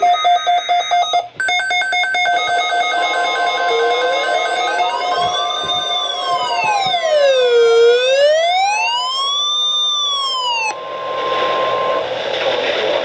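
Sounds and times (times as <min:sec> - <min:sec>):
pulsing beeps: 0:00.0 - 0:09.1
steady high alarm tone: 0:00.0 - 0:12.0
electronic siren wailing: 0:00.0 - 0:12.1.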